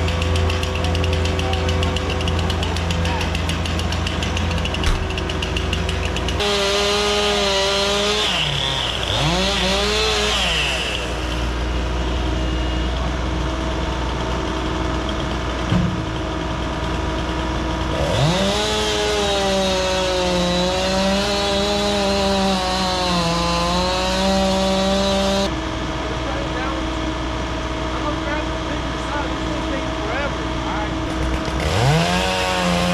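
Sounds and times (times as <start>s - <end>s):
chainsaw cutting wood: 0.0s - 11.9s, 17.3s - 25.6s, 31.1s - 32.9s.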